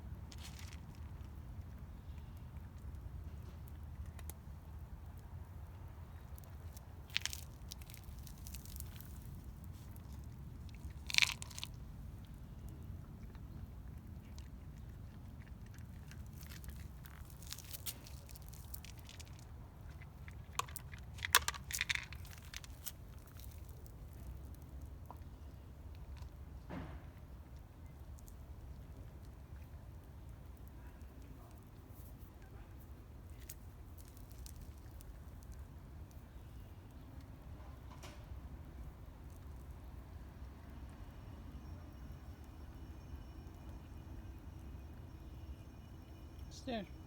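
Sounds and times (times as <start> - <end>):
cat crunching food: 0.0 - 26.4
low steady rumble: 0.0 - 47.0.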